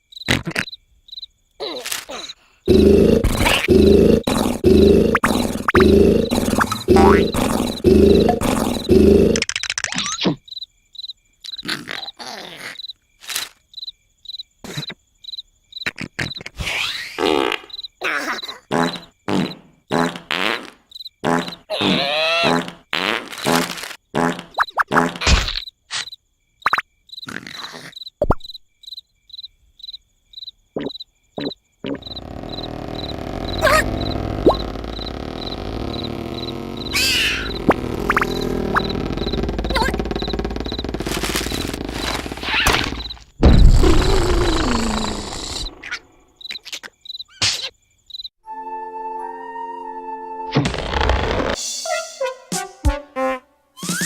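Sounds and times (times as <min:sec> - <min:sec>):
crickets chirping: 0:00.0 - 0:16.4, 0:17.2 - 0:20.2, 0:20.8 - 0:21.7, 0:24.4 - 0:48.4
cartoon sound effects: 0:01.6 - 0:10.3, 0:21.7 - 0:22.8, 0:31.4 - 0:46.0, 0:50.5 - 0:54.0
cartoon snoring: 0:02.7 - 0:09.5, 0:30.8 - 0:43.0, 0:43.6 - 0:45.9
quick rising pitch slide: 0:32.1 - 0:41.8.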